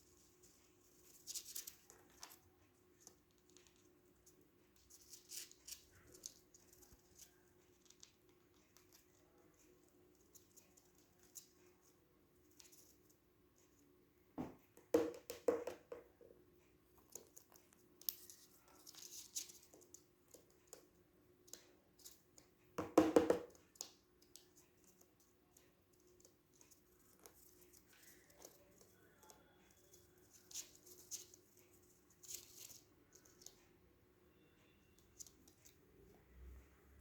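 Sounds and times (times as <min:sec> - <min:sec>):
bird scratching and pecking: 0:00.0 - 0:13.2, 0:17.0 - 0:20.9, 0:25.9 - 0:33.6
faint steady hum: 0:15.8 - 0:37.0.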